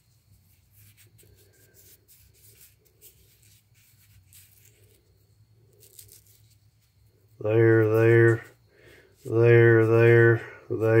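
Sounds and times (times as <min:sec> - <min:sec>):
stone rubbing and scraping in hands: 0:00.0 - 0:08.6
low steady hum: 0:00.0 - 0:11.0.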